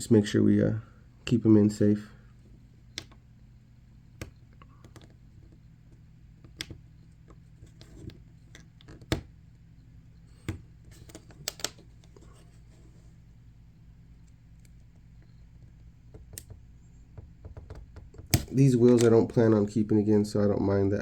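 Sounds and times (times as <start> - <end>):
low steady hum: 0.0 - 21.0
small clicks and taps: 2.9 - 3.2, 4.2 - 9.3, 10.3 - 12.5, 14.2 - 19.6.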